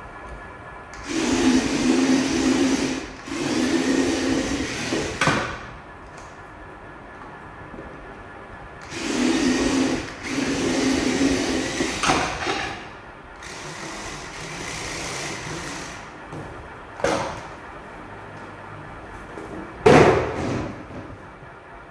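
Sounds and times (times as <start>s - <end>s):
toy truck motor whirring: 0.9s - 5.5s, 8.8s - 12.4s, 13.4s - 16.1s.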